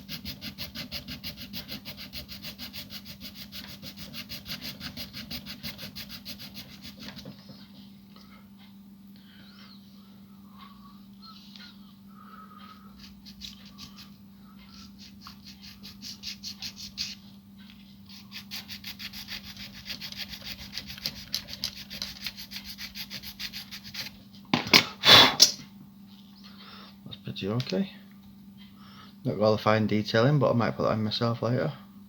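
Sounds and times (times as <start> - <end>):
hand file rasping on plastic: 0.0 - 7.5, 12.8 - 17.2, 18.1 - 24.1
steady low hum: 0.0 - 32.0.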